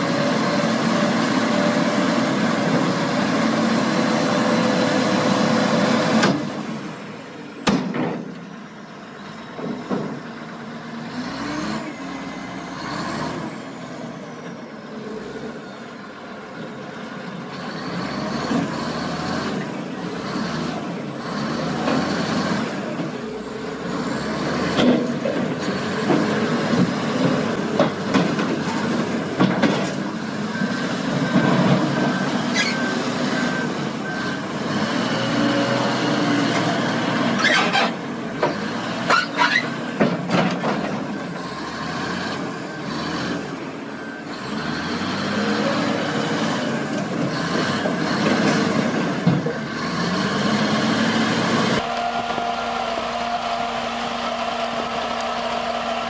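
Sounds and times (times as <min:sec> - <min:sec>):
diesel engine of construction machinery: 0:00.0 - 0:56.0
faint reversing alarm beeping: 0:30.4 - 0:34.6.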